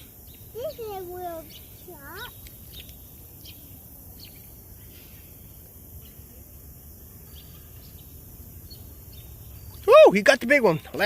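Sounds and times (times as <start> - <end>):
faint bird chirps: 0.0 - 6.6
steady low outdoor rush: 0.0 - 11.0.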